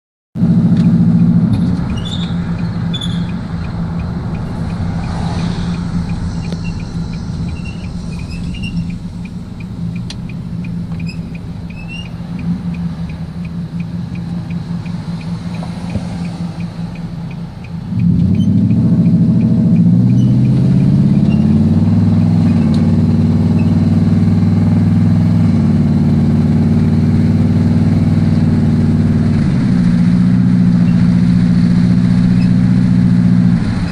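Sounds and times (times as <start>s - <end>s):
truck engine running: 0.4s - 33.9s
high-pitched squeak: 1.7s - 3.7s, 4.4s - 10.0s, 10.9s - 12.2s, 20.1s - 21.6s, 23.5s - 23.8s.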